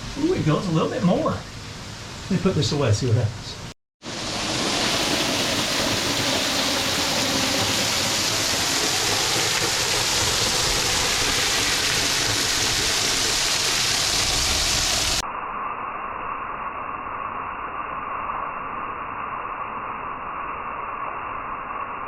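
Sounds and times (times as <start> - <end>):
waterfall rushing: 4.0 - 15.2.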